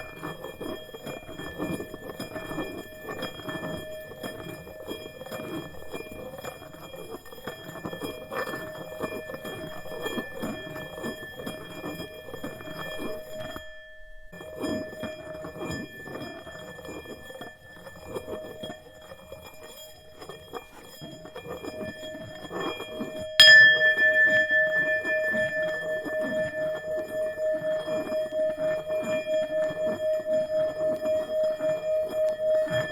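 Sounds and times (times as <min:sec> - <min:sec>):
singing bowl ringing: 0:21.0 - 0:32.9.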